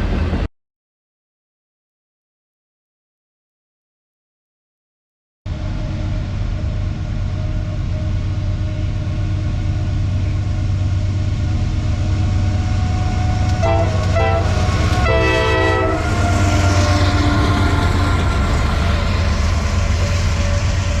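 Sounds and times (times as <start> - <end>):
diesel train rumble: 0.0 - 0.5, 5.5 - 21.0
train air horn blasts: 12.6 - 19.3.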